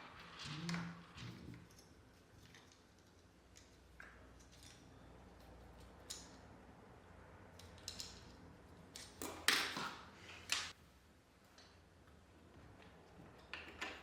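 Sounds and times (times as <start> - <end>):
hinge parts clicking and rattling: 7.5 - 9.8.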